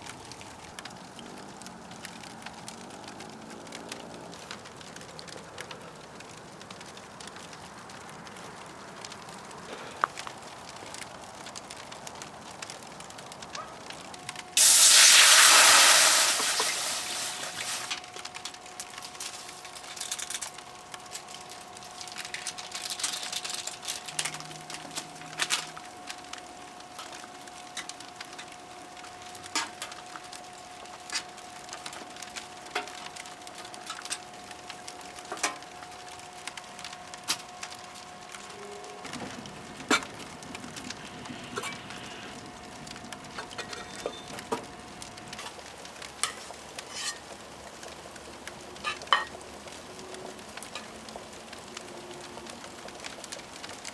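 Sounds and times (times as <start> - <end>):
wood fire crackling: 0.0 - 53.9
loud hiss: 14.6 - 18.0.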